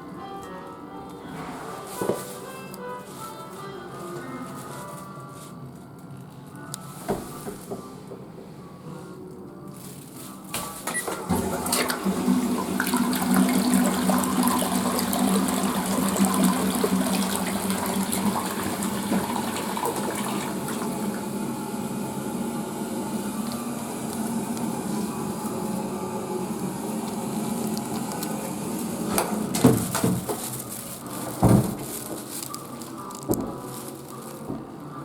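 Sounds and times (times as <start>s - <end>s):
toilet flushing: 10.8s - 30.7s.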